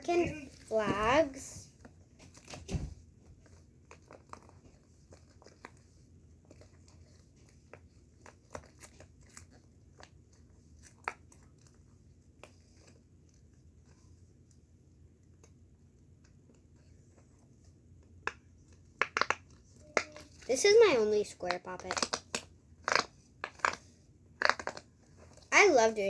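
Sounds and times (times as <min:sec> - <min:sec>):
fidget toys clicking and crinkling: 0:03.4 - 0:14.6, 0:18.0 - 0:26.0.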